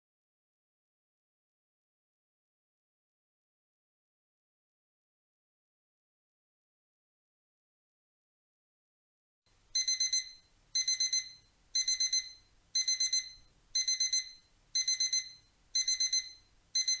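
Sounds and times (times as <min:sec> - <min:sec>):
alarm clock beeping: 0:09.8 - 0:17.0.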